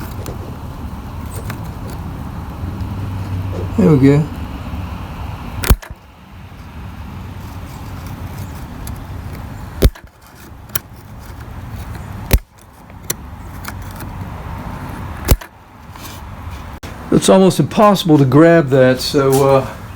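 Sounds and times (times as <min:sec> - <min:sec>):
steady background noise: 0:00.0 - 0:19.9
sharp metallic clicks: 0:05.6 - 0:06.1, 0:08.8 - 0:10.9, 0:11.8 - 0:14.2, 0:15.2 - 0:15.6.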